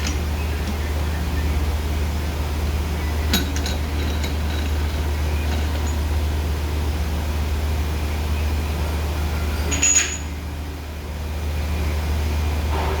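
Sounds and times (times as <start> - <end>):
metal lathe humming: 0.0 - 6.6.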